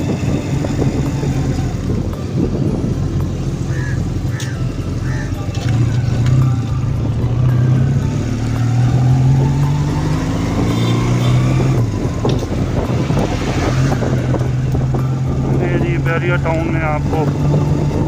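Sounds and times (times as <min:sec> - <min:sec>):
road and wind noise: 0:00.0 - 0:18.0.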